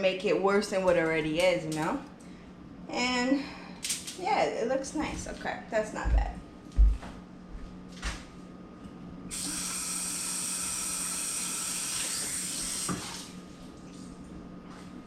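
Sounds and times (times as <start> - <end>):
tap water running: 9.3 - 13.4.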